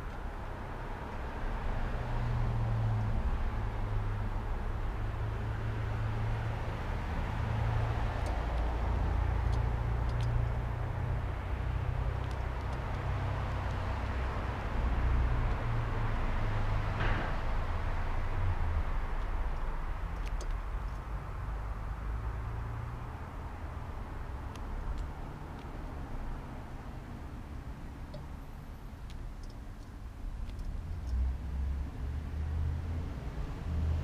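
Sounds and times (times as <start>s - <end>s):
distant road traffic: 0.0s - 34.0s.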